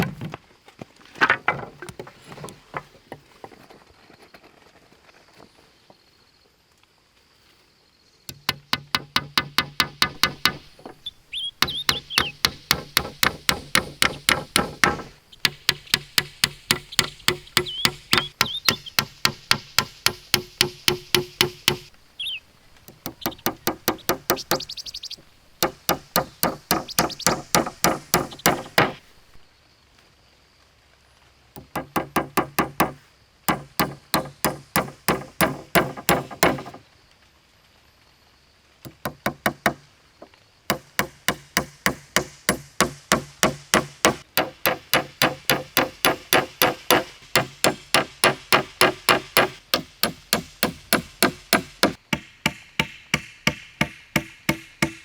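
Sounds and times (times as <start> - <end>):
rapid strikes on hard object: 8.3 - 11.0, 11.6 - 21.9, 22.9 - 24.7, 25.6 - 29.1, 31.6 - 36.8, 40.7 - 55.0.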